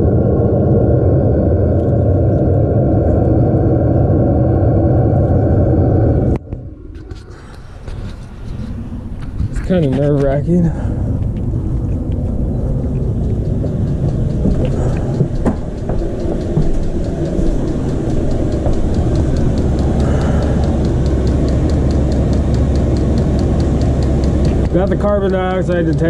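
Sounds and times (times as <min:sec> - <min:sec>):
diesel heater rumbling: 0:00.0 - 0:26.0
rapid even ticking: 0:10.5 - 0:26.0.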